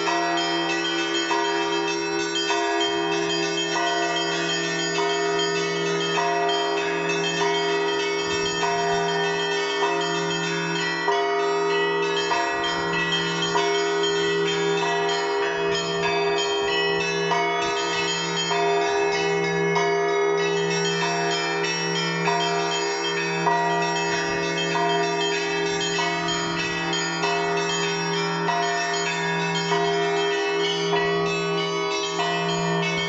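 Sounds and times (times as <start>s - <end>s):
low hum of large bell: 0.0s - 33.0s
small church bells struck rhythmically: 0.0s - 33.0s.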